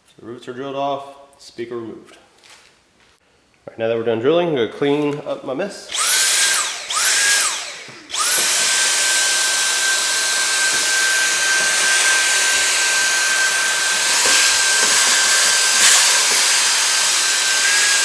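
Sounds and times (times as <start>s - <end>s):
cordless vacuum cleaner whining: 5.9s - 18.0s.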